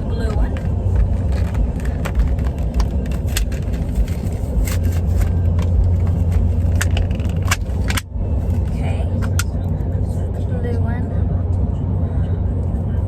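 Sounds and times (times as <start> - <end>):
car cabin rumble: 0.0 - 13.0
plastic clicks and crinkles: 0.5 - 8.0.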